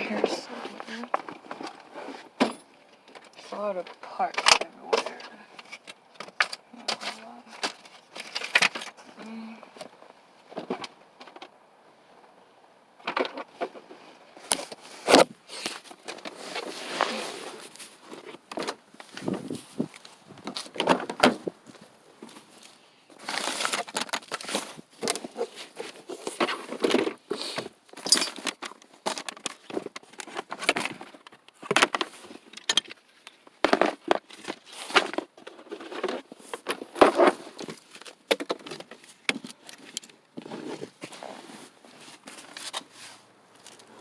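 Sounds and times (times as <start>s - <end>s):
metal car parts clinking and rattling: 27.9s - 37.1s.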